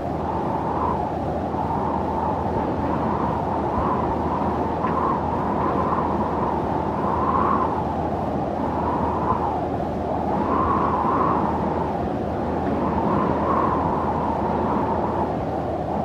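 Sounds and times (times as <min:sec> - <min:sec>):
low rushing wind: 0:00.0 - 0:16.0.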